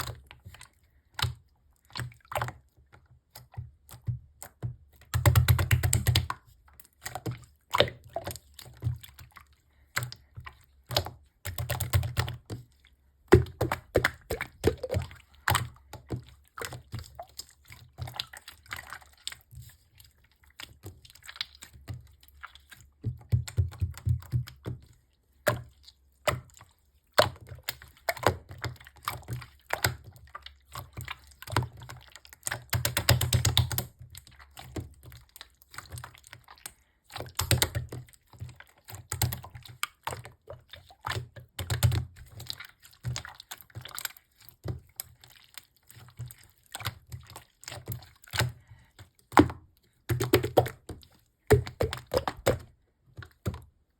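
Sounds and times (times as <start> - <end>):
slime clicking and popping: 50.1 - 52.6.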